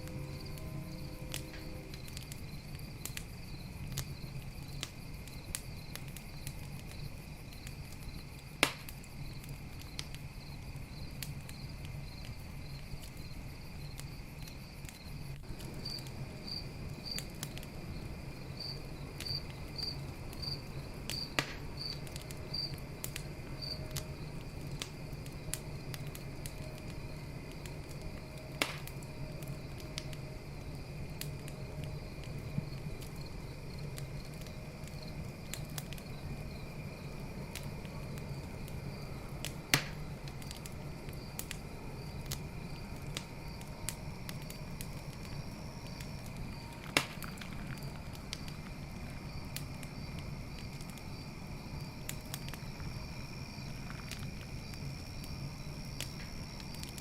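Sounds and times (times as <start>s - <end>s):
low steady rumble: 0.0s - 8.0s
campfire crackling and popping: 0.0s - 57.0s
crickets trilling: 0.0s - 57.0s.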